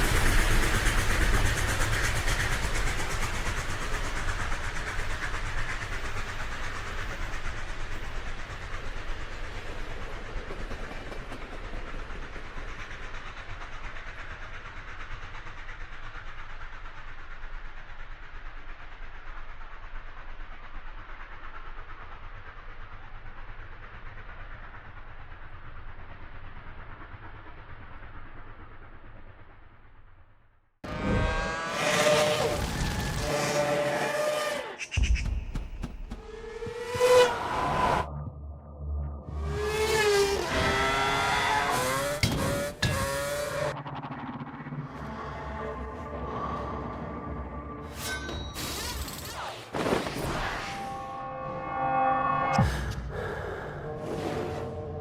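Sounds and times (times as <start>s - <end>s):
loud wide rushing noise: 0.0s - 10.5s.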